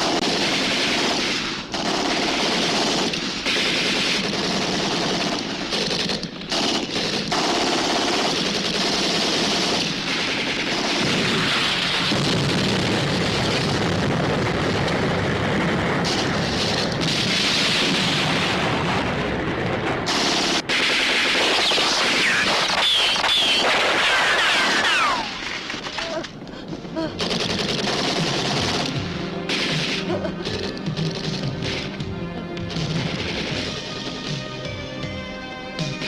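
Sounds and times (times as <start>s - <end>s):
machine-gun fire: 0.0s - 25.9s, 27.2s - 32.0s, 32.7s - 34.2s.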